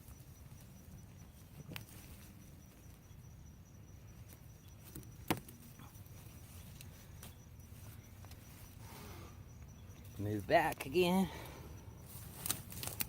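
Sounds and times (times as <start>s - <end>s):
high insect drone: 0.0s - 13.0s
digging in garden soil: 10.0s - 13.0s.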